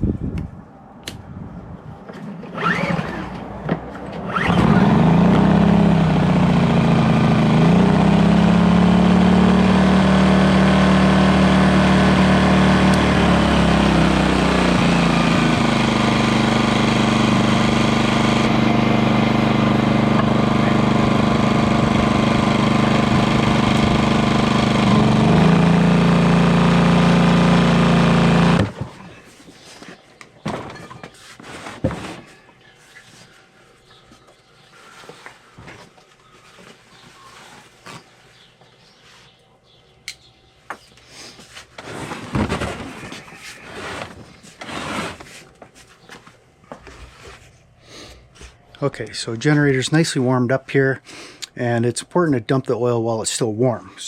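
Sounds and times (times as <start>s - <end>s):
generator engine running: 4.2s - 29.1s.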